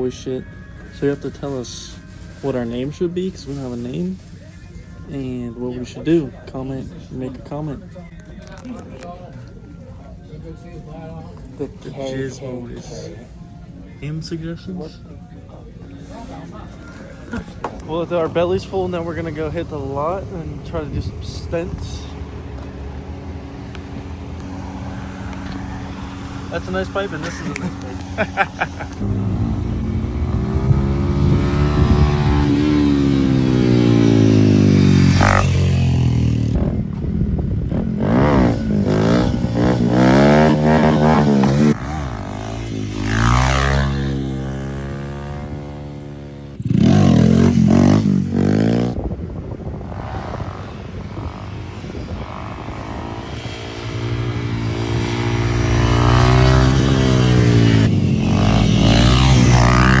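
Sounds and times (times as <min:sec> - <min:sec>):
motorcycle engines revving: 0:00.0 - 1:00.0.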